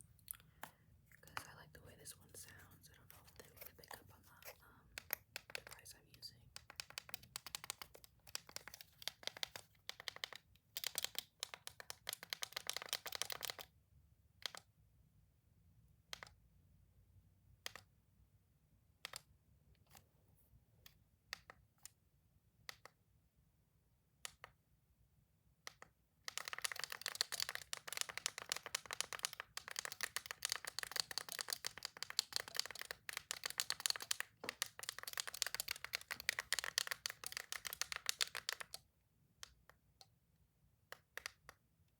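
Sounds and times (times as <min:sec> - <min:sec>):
toys clicking: 0:06.6 - 0:13.7, 0:25.7 - 0:38.8.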